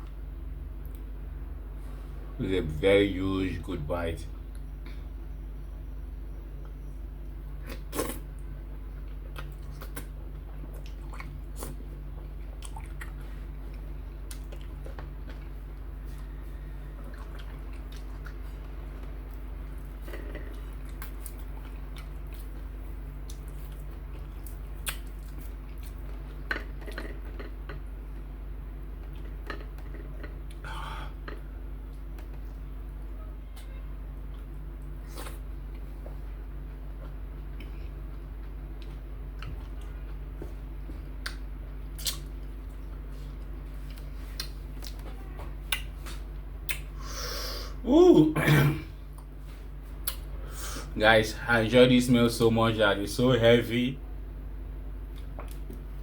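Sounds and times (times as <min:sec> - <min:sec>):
quiet chewing: 0:06.6 - 0:27.9, 0:31.2 - 0:47.0, 0:49.1 - 0:50.3, 0:55.0 - 0:56.0.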